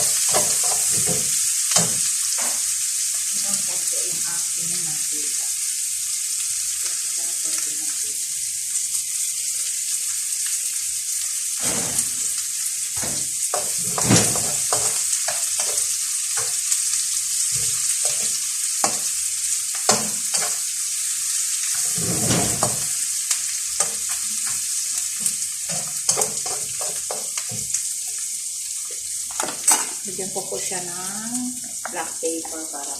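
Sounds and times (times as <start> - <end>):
stirring scrapes and knocks in pan: 0.0 - 2.7, 13.0 - 16.7, 17.4 - 20.7, 21.7 - 23.0, 23.8 - 27.8
garlic and onion sizzling in oil: 0.0 - 32.9.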